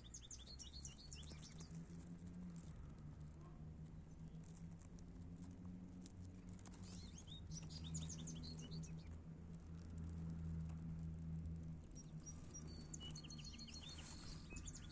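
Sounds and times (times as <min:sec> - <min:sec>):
small bird chirping: 0:00.0 - 0:01.8, 0:06.7 - 0:09.2, 0:12.0 - 0:14.9.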